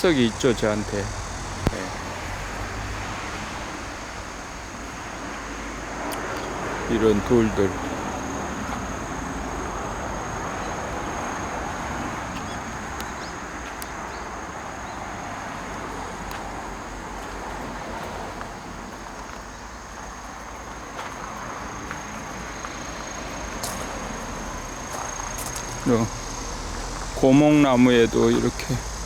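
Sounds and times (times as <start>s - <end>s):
high-pitched insect trill: 0.0s - 29.0s
outdoor background noise: 0.0s - 29.0s
faint ticks: 6.0s - 6.8s, 10.6s - 15.0s.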